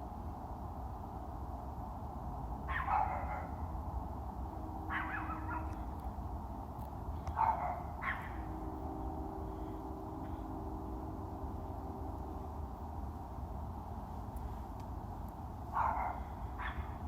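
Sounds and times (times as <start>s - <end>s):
steady low rumble: 0.0s - 17.0s
dog barking: 2.7s - 3.7s, 4.9s - 5.8s, 7.3s - 8.5s, 15.7s - 17.0s.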